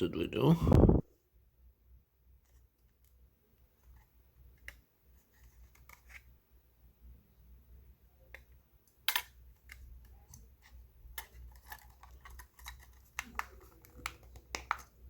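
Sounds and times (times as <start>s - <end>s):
plastic casing clicks and taps: 11.2s - 15.0s.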